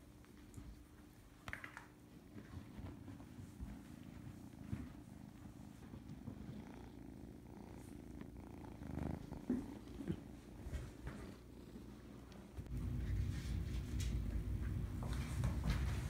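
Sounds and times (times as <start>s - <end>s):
cat purring: 2.3s - 13.0s.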